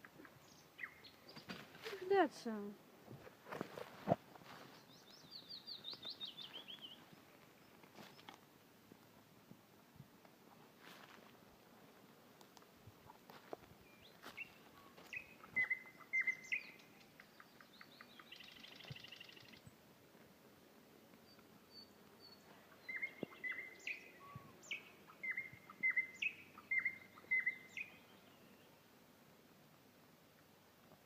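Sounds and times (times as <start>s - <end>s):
songbird chirping and trilling: 0.2s - 1.6s, 4.5s - 8.2s, 13.8s - 19.8s, 21.2s - 28.8s.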